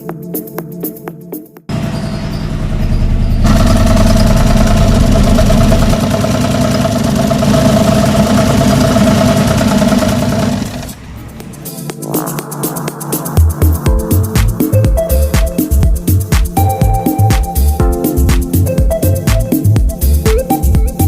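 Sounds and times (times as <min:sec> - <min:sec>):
small petrol engine running: 0:01.7 - 0:11.5.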